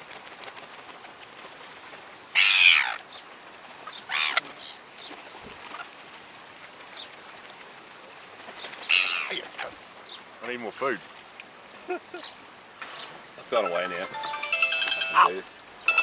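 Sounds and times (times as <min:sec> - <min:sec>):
gulls squawking: 0:02.4 - 0:03.1, 0:08.8 - 0:09.7.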